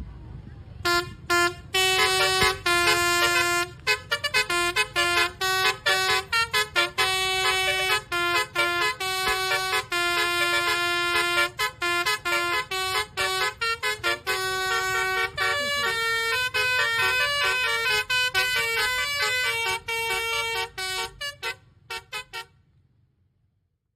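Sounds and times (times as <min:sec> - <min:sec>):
steady low rumble: 0:00.0 - 0:22.2
bus musical horn playing tune: 0:00.8 - 0:22.7.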